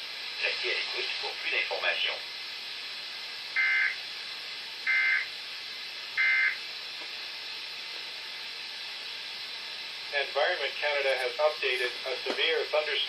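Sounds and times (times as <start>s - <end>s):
radio hiss: 0.0s - 13.0s
shrill electronic data bursts: 3.5s - 4.0s, 4.8s - 5.3s, 6.2s - 6.6s.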